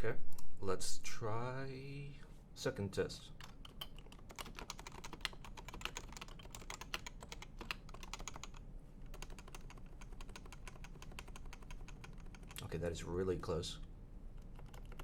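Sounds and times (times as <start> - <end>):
fast typing on keyboard: 3.4 - 12.6, 14.4 - 15.0.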